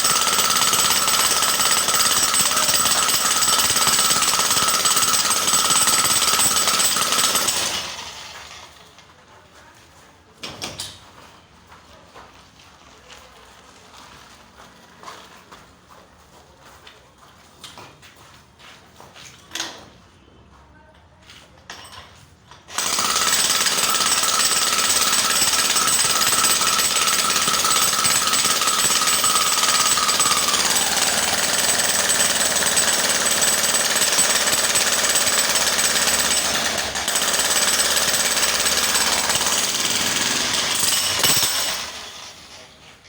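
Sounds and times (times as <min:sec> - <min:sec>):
electric jackhammer running: 0:00.0 - 0:08.6, 0:22.7 - 0:42.4.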